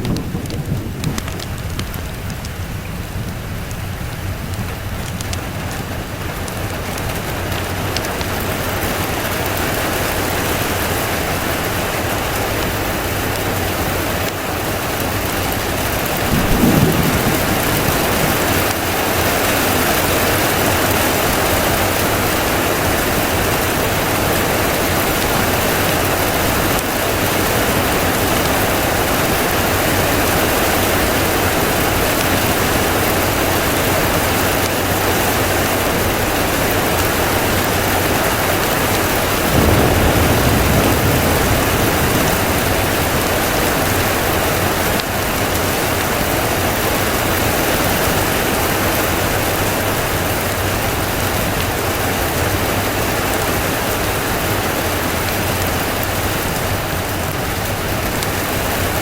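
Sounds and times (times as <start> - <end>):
low rumble of thunder: 0.0 - 5.2, 15.2 - 33.2, 36.6 - 47.2
heavy rain: 0.0 - 59.0.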